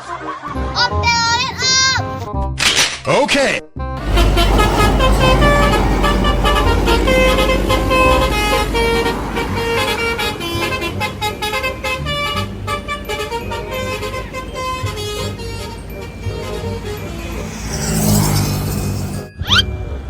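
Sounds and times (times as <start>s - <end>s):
heavy vehicle engine rumble: 4.0s - 20.0s
multi-tone bus horn tune: 4.0s - 20.0s.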